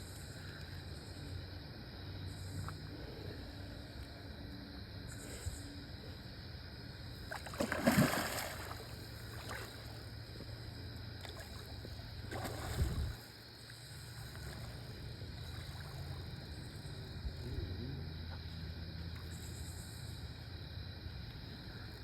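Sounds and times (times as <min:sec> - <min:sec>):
water splashing and sloshing: 0:07.0 - 0:16.9.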